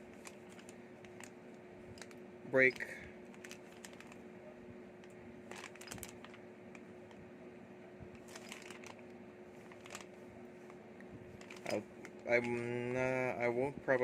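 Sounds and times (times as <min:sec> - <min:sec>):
steady low hum: 0:00.0 - 0:14.0
small clicks of parts: 0:00.2 - 0:04.2, 0:08.2 - 0:10.1
packaging rustling: 0:03.3 - 0:04.2, 0:05.5 - 0:06.4, 0:08.2 - 0:09.0, 0:09.6 - 0:10.2.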